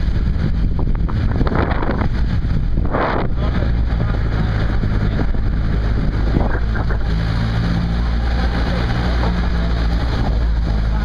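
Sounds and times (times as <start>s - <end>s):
vehicle engine under load: 0.0s - 11.0s.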